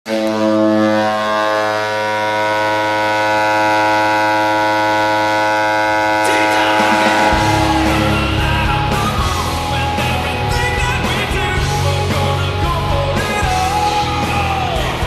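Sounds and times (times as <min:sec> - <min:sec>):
goal horn blast: 0:00.1 - 0:09.6
noisier sound: 0:01.1 - 0:10.8.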